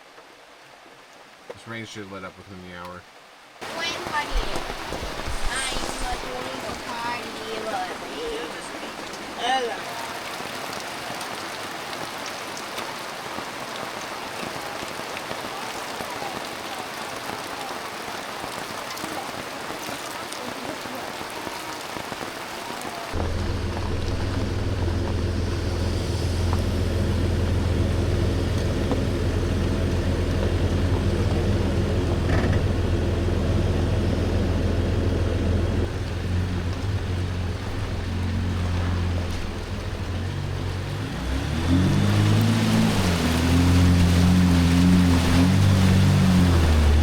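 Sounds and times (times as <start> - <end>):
steady rain: 0.0 - 47.0
diesel engine droning: 3.6 - 9.8, 23.2 - 47.0.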